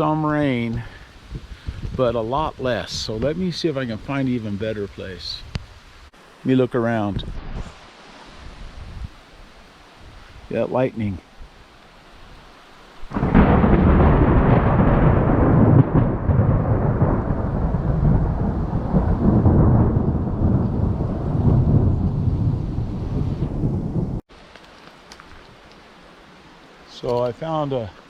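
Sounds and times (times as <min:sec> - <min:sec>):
steady rain: 0:00.0 - 0:28.0
thunder rumbling: 0:13.1 - 0:24.2.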